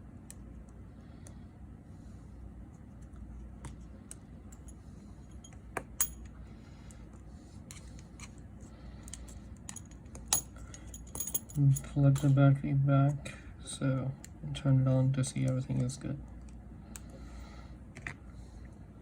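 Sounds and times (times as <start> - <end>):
low steady hum: 0.0 - 19.0
tools clicking and tapping: 9.0 - 12.4.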